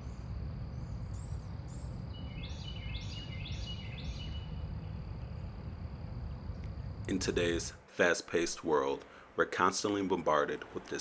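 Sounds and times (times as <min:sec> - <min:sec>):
birds calling: 0:00.0 - 0:05.5
low rush: 0:04.4 - 0:11.0.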